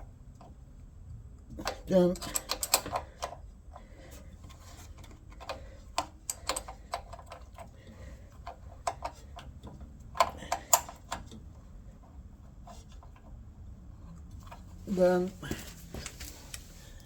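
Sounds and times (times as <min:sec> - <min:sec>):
spanner clicking on metal: 0:01.6 - 0:03.4, 0:04.5 - 0:07.7, 0:08.3 - 0:11.4.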